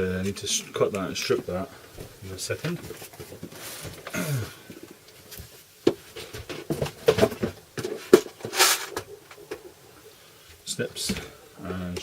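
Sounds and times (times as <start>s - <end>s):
brief rustle: 7.9s - 9.1s.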